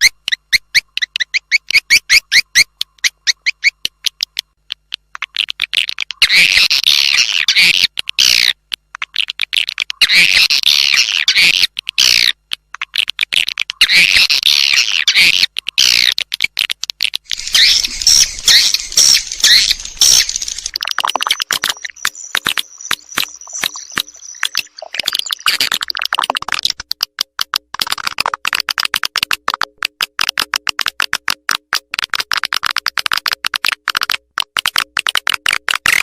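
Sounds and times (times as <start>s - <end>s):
sharp repeated bird chirps: 0.0s - 4.4s, 6.2s - 8.6s, 10.0s - 12.4s, 13.8s - 16.2s, 17.3s - 26.8s
twittering bird chatter: 0.0s - 4.5s, 5.1s - 16.6s, 17.2s - 26.8s.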